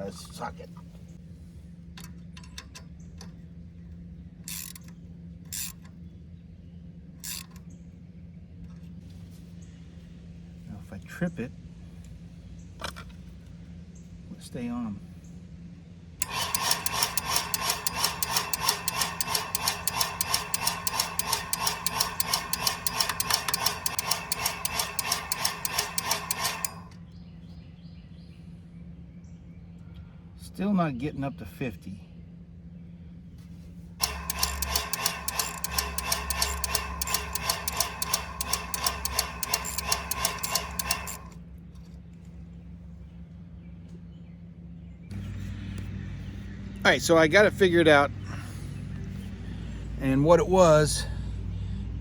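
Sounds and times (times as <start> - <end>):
steady low hum: 9.2 - 30.7, 31.3 - 43.8
pressure switch contacts chattering: 16.2 - 27.0, 34.0 - 41.4
socket ratchet clicking: 16.2 - 27.0, 34.0 - 41.4.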